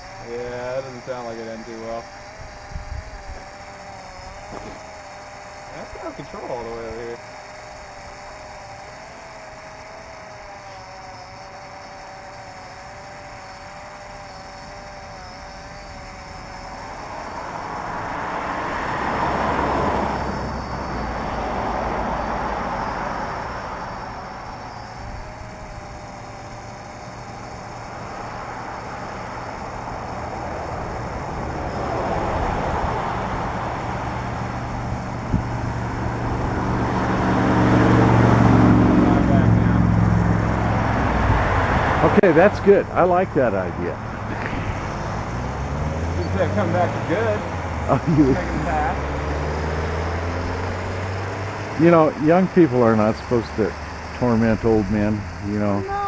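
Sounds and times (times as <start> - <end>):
faint wavering whine: 0.0 - 56.0
low engine hum: 0.0 - 56.0
road vehicles passing by: 15.8 - 25.2, 25.8 - 56.0.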